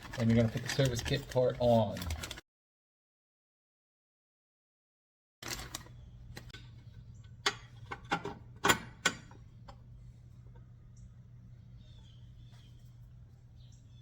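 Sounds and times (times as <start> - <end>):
steady low hum: 5.9 - 14.0.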